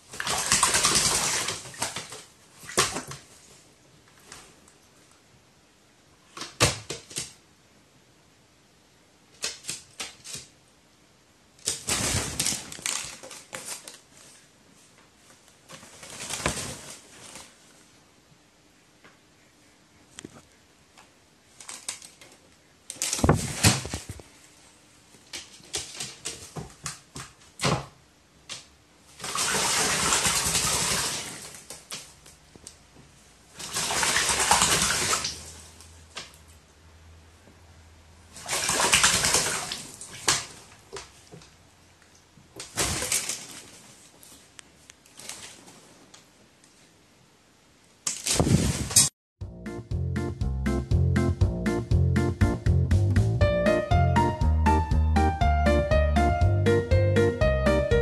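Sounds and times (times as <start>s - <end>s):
bird splashing in water: 0.1s - 3.2s, 29.2s - 31.7s, 33.6s - 35.7s, 38.3s - 40.6s.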